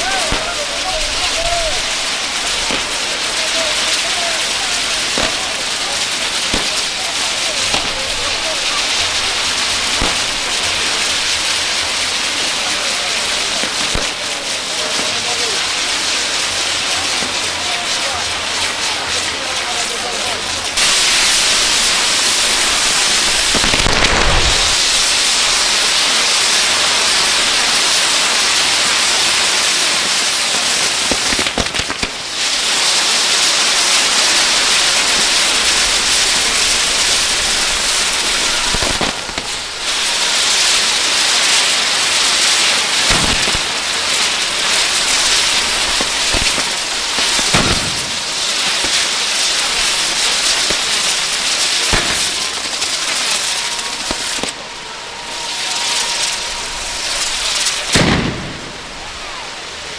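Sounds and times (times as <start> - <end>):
fireworks hissing crackle: 0.0 - 59.9
deep firework thumps: 43.1 - 49.0, 57.8 - 59.1.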